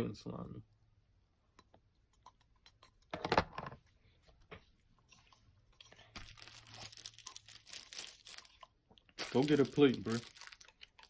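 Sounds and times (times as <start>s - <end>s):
wet slime squish: 5.2s - 11.0s
slime crackling and crinkling: 6.0s - 11.0s.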